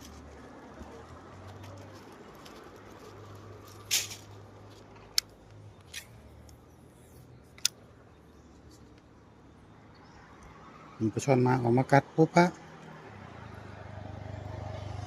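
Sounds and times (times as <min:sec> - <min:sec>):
sharp clicks: 0:07.4 - 0:07.9.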